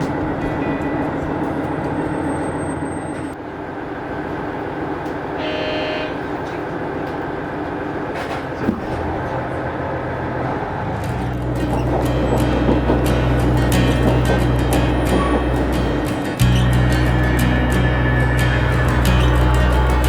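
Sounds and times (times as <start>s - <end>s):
railcar engine and wheels rumbling: 0.0s - 20.0s
brief pitched tone: 5.4s - 6.3s.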